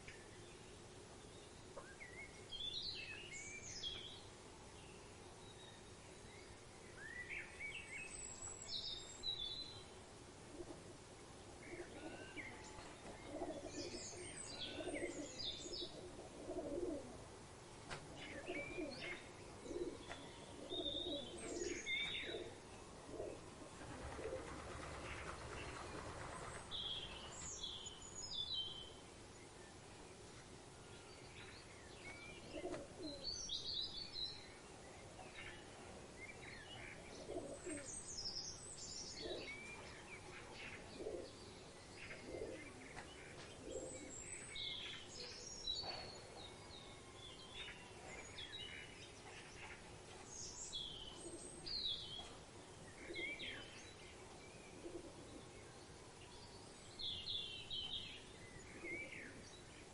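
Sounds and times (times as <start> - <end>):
low cooing bird notes: 10.4 - 11.0, 11.6 - 17.3, 18.1 - 27.4, 32.4 - 33.4, 36.8 - 38.0, 39.1 - 40.0, 40.7 - 44.5, 51.1 - 53.9, 54.6 - 55.6, 58.6 - 59.4.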